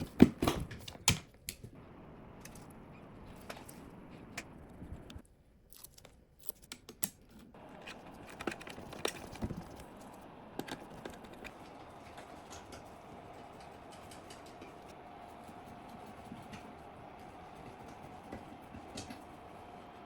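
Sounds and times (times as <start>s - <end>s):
computer parts clicking and tapping: 7.6s - 20.0s.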